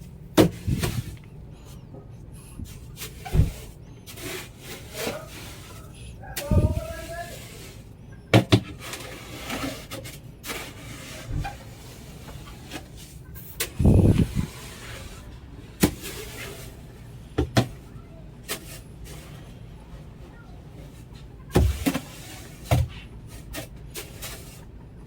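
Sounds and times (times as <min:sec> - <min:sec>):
sand and gravel scraped by hand: 0:00.5 - 0:01.2, 0:02.6 - 0:07.9, 0:08.8 - 0:17.0, 0:23.3 - 0:24.7.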